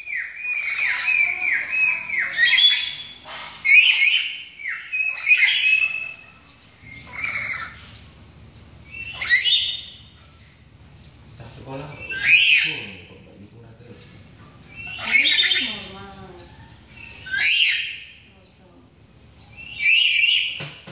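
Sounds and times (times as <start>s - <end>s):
bird squawking calls: 0.0s - 8.1s, 8.8s - 10.5s, 11.1s - 13.1s, 14.6s - 18.3s, 19.4s - 20.9s.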